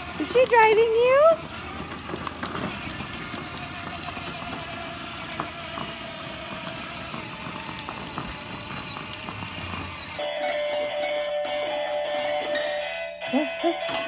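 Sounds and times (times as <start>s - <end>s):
vehicle engine and road noise: 0.0s - 10.2s.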